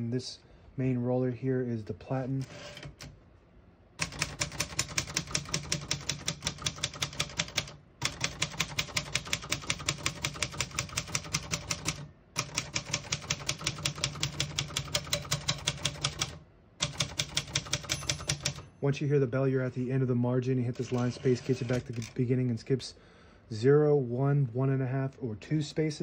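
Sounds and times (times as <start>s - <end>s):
manual typewriter typing: 2.4s - 3.2s, 4.0s - 18.7s, 20.7s - 22.2s.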